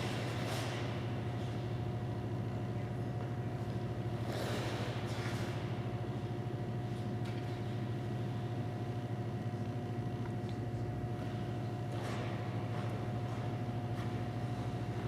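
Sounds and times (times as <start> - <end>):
skate blades scraping ice: 0.0 - 1.4, 4.2 - 5.8
machinery hum with tones: 0.0 - 15.0.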